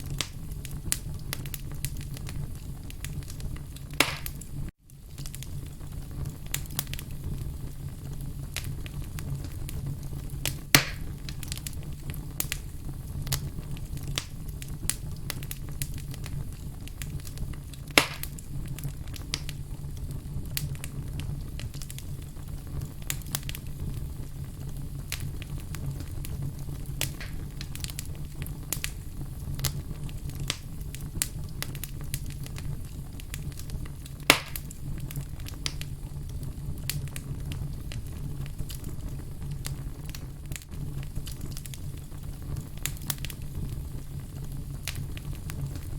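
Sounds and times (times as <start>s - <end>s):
fire rumbling: 0.0s - 45.9s
sharp pops of burning logs: 0.0s - 45.9s
wood crackling: 0.0s - 45.9s.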